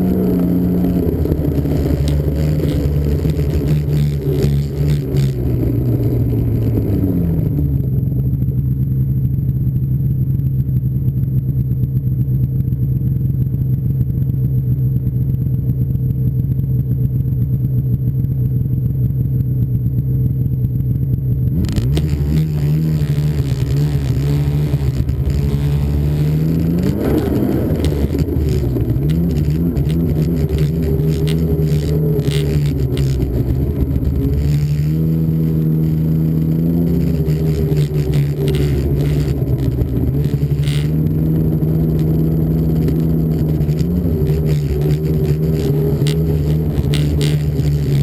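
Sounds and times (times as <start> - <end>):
snowmobile engine revving: 0.0 - 7.8, 21.5 - 48.0.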